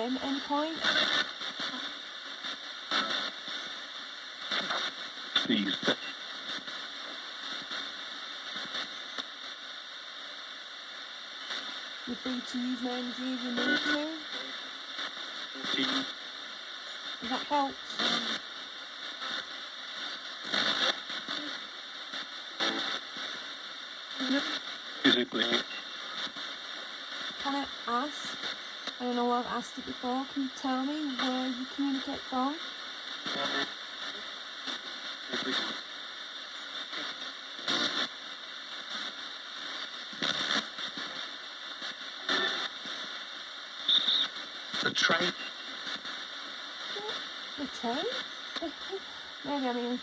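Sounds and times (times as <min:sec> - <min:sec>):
radio static hiss: 0:00.0 - 0:50.0
snatches of broadcast sound: 0:00.0 - 0:50.0.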